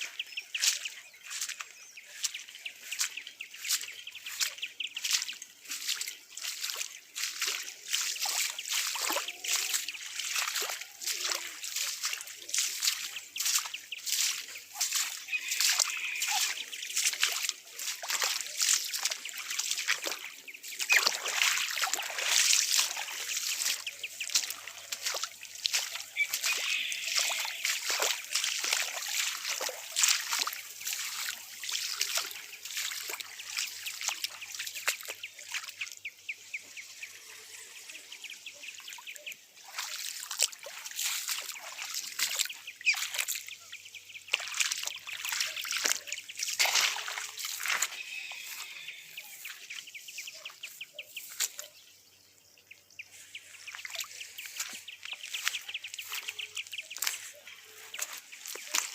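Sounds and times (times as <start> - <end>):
water splashing over spillway: 16.9 - 35.9, 44.2 - 48.0.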